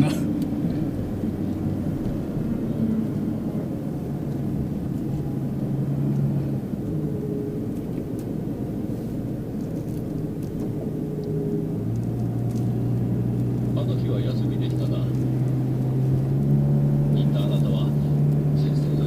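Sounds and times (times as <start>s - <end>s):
car engine and road noise: 0.0s - 19.0s.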